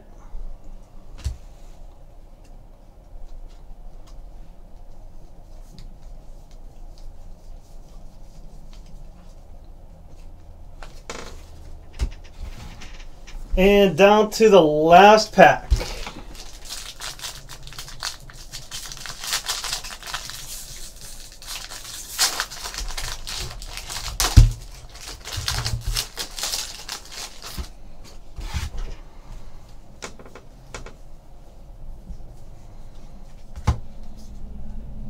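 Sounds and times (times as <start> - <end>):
wrapper tearing and crinkling: 15.8 - 27.7.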